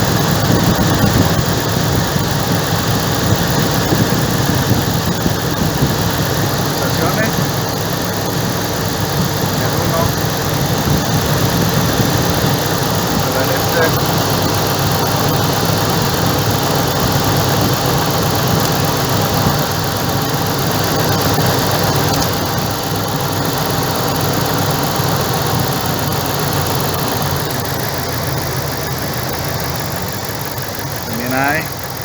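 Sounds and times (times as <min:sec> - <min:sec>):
pickup engine idling: 0:00.0 - 0:32.0.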